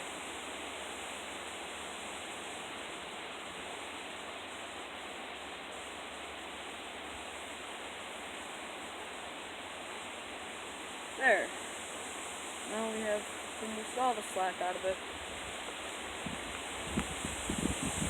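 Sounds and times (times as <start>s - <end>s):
river water rushing: 0.0s - 18.0s
strong wind rushing: 16.1s - 18.0s.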